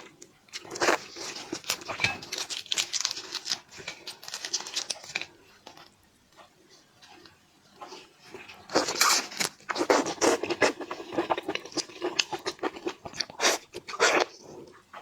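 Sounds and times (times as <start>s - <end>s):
shrimp shell crackling and tearing: 0.6s - 5.3s, 8.7s - 10.8s.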